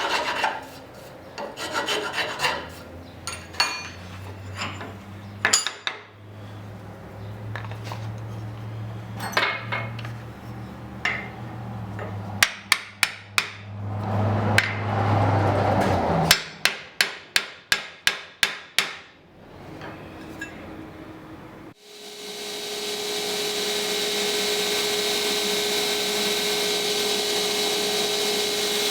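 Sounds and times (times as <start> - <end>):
hammer striking steel on anvil: 11.0 - 11.4, 12.0 - 13.6, 16.3 - 19.1.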